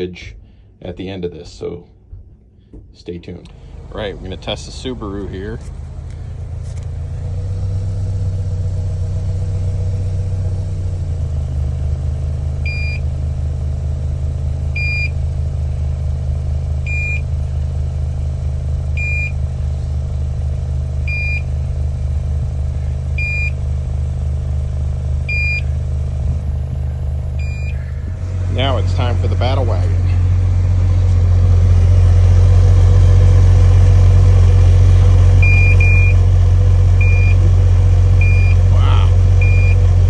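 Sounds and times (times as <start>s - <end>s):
car engine idling: 3.2s - 40.0s
short high alarm beeps: 23.2s - 23.6s, 25.3s - 25.6s, 27.4s - 27.8s, 35.4s - 36.2s, 37.0s - 37.4s, 38.2s - 38.6s, 39.4s - 39.8s.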